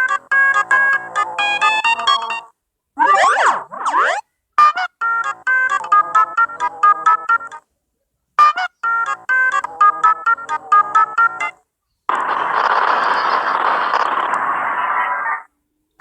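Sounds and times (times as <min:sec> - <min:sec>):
electronic jingle: 0:03.0 - 0:04.2.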